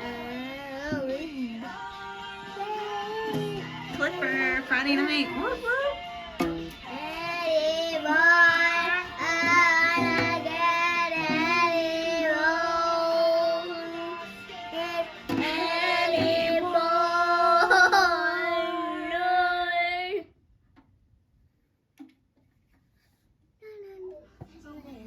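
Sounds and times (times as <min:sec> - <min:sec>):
music with singing: 0:00.0 - 0:20.2.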